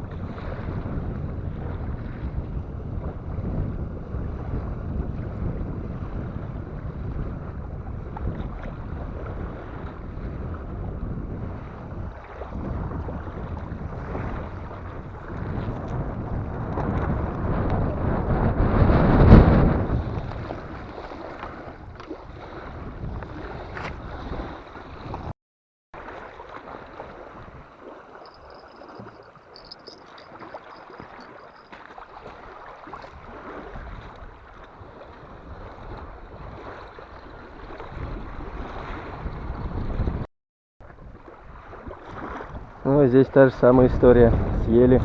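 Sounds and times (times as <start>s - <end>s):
wind buffeting microphone: 0.0s - 25.3s, 26.9s - 45.0s
waves splashing on shore: 19.6s - 25.3s, 26.0s - 39.8s, 40.9s - 44.8s.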